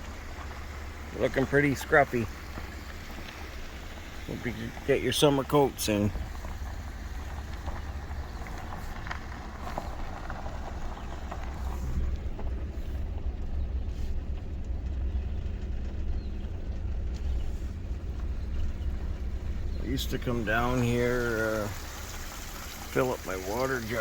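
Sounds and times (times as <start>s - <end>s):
vehicle engine rumble from cab: 0.0s - 24.0s
faint ticks: 2.3s - 4.3s.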